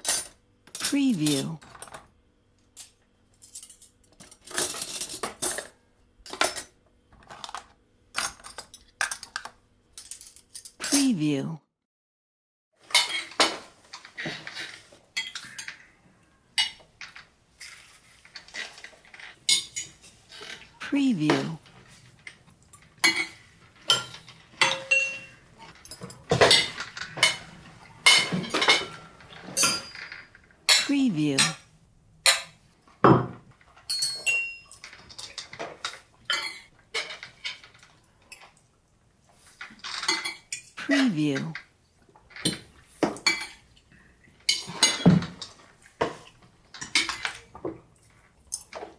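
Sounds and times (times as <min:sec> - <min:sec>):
cutlery clinking against dishes: 0:12.9 - 0:15.9, 0:16.6 - 0:17.8, 0:18.4 - 0:22.3, 0:23.0 - 0:38.6, 0:39.6 - 0:41.1, 0:42.3 - 0:43.8, 0:44.4 - 0:48.9.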